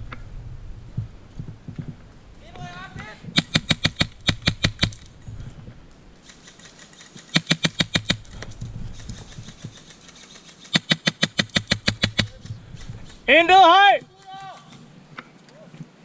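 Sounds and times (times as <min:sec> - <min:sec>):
airsoft rifle firing bursts: 0:03.4 - 0:05.0, 0:06.2 - 0:08.3, 0:09.0 - 0:12.4.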